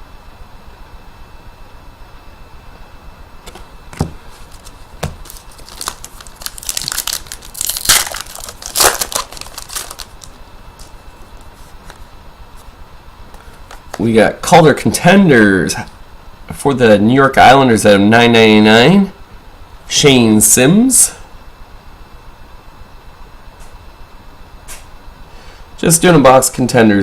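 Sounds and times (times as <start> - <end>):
card pack wrapper tearing and crinkling: 3.5 - 12.0.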